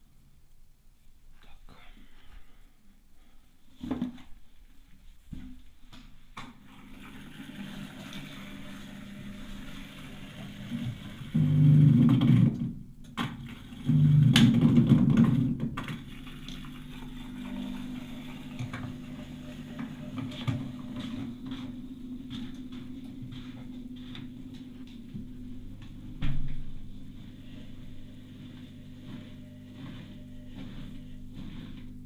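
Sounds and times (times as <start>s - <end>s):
washing machine drain pump humming: 6.6s - 32.0s.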